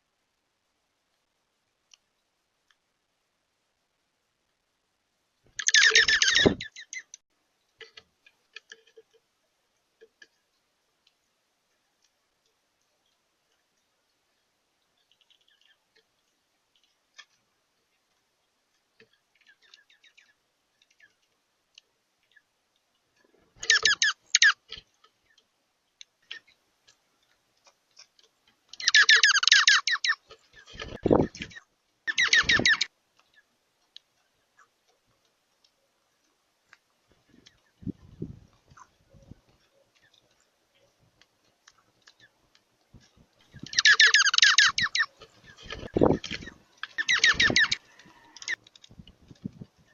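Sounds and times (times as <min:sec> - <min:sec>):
faint bird chirps: 0:05.5 - 0:07.2, 0:18.9 - 0:21.3, 0:23.6 - 0:25.5, 0:28.8 - 0:33.6, 0:43.4 - 0:49.9
rapid repeated bird calls: 0:05.5 - 0:07.2, 0:14.9 - 0:16.0, 0:23.6 - 0:25.4, 0:28.8 - 0:33.6, 0:43.0 - 0:49.9
bird chattering call: 0:05.6 - 0:07.1, 0:23.6 - 0:24.6, 0:28.8 - 0:30.2, 0:43.6 - 0:45.1.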